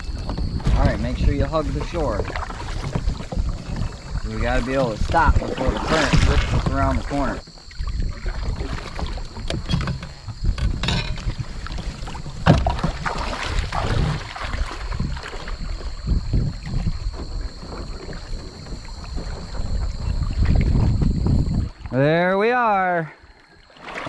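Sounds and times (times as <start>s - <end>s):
wind rumble on microphone: 0.0s - 22.1s
paddle blades splashing in water: 0.0s - 24.0s.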